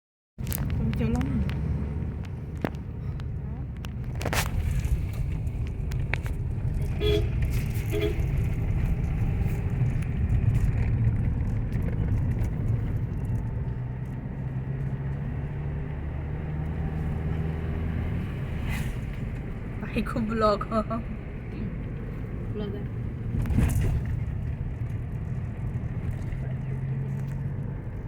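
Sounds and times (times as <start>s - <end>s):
car engine and road noise: 0.4s - 28.0s
car horn toots: 6.8s - 8.5s.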